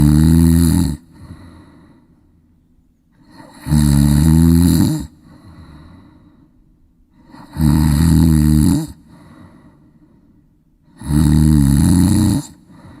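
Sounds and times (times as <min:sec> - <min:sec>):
duck snoring: 0:00.0 - 0:02.0, 0:03.2 - 0:06.3, 0:07.2 - 0:09.8, 0:10.8 - 0:13.0
faint breath: 0:01.0 - 0:02.5, 0:05.1 - 0:07.6, 0:09.0 - 0:11.0, 0:12.5 - 0:13.0.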